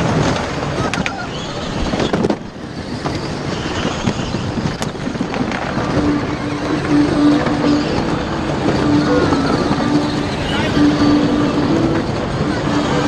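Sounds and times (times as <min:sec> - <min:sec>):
toy car rattling rumble: 0:00.0 - 0:13.0
steady hum: 0:04.4 - 0:13.0.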